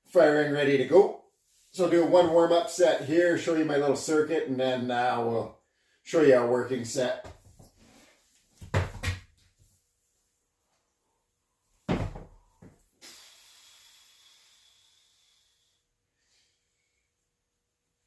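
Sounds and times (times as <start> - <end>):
gym equipment knocks and clunks: 11.9 - 12.4.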